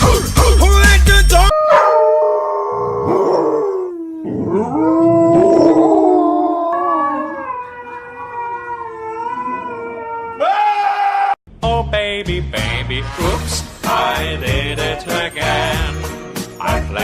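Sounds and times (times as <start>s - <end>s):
dog howling: 1.5s - 11.4s.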